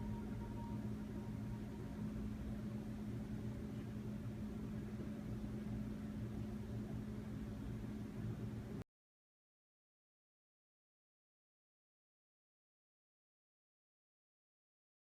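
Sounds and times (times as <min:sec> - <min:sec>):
steady low hum: 0:00.0 - 0:08.8.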